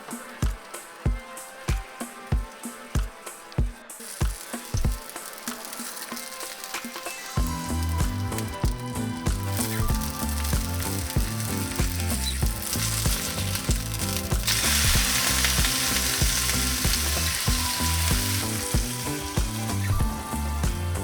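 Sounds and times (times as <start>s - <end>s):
background music: 0.0s - 21.0s
food sizzling in pan: 0.0s - 21.0s.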